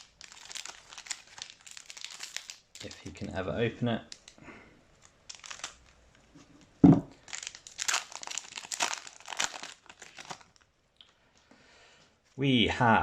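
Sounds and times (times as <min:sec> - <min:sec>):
wrapper crinkling and tearing: 0:00.0 - 0:03.3, 0:04.1 - 0:04.4, 0:05.0 - 0:06.2, 0:07.1 - 0:10.7
loud thump: 0:06.8 - 0:07.1.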